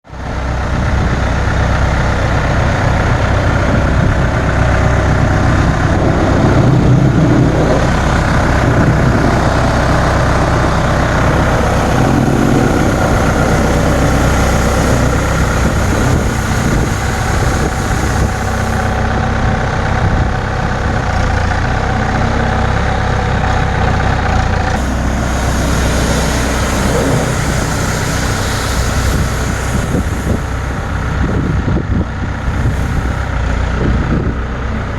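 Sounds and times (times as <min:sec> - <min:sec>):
heavy machine engine running: 0:00.0 - 0:34.9
rushing hiss: 0:04.4 - 0:19.1, 0:24.7 - 0:33.7.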